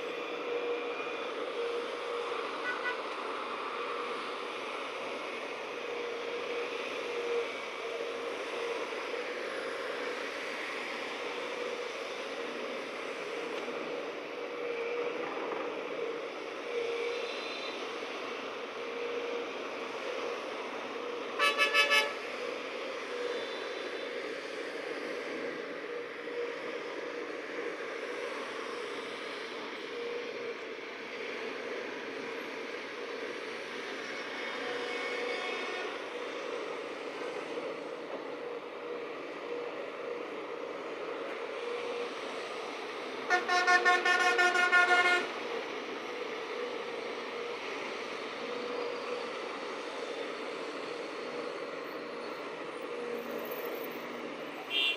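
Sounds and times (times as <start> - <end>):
vehicle horn toots: 2.6 - 3.0, 21.4 - 22.2, 43.3 - 45.3.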